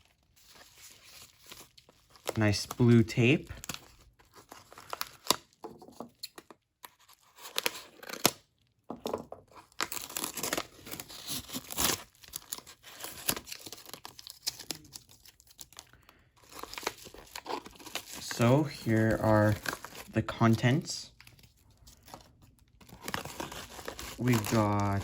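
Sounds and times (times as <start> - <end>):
package wrapping tearing and crinkling: 0.0 - 8.6, 9.5 - 25.0.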